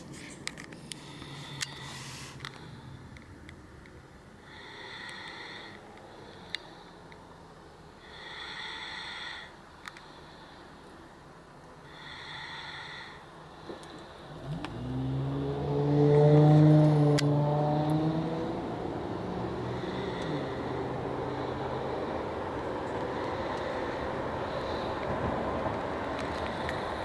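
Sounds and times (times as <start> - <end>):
faint clicks: 9.8 - 10.1.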